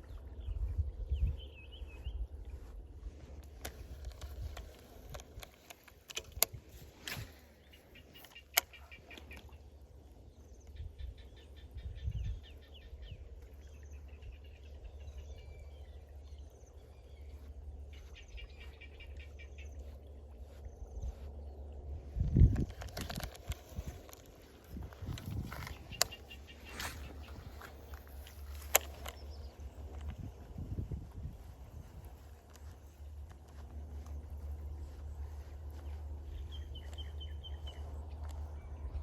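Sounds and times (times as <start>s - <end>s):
birds chirping: 0.0s - 39.0s
sharp clicks: 3.4s - 7.4s, 8.1s - 9.5s, 22.4s - 30.2s.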